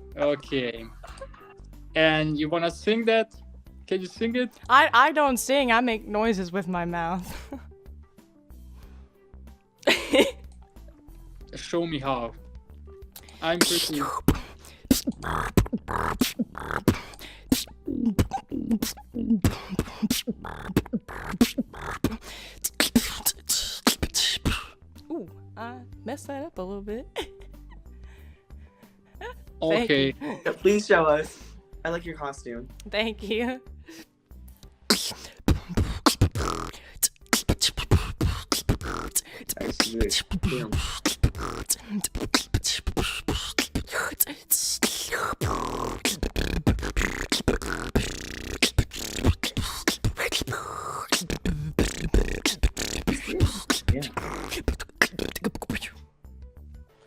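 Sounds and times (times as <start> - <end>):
vocal beatboxing: 13.2 - 24.8, 34.9 - 56.0.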